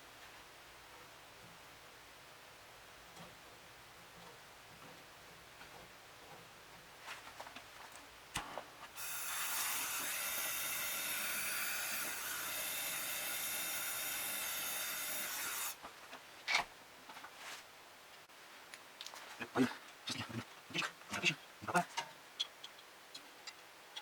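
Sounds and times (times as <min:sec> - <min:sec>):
pressurized gas hissing: 0:09.0 - 0:15.8.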